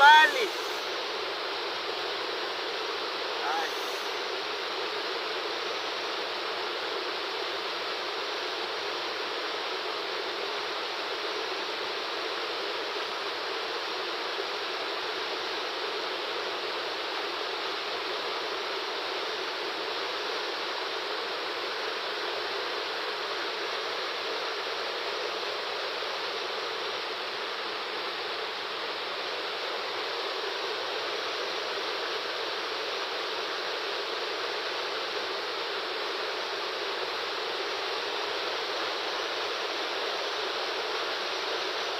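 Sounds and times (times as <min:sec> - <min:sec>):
waterfall rushing: 0:00.0 - 0:01.0, 0:03.3 - 0:04.3.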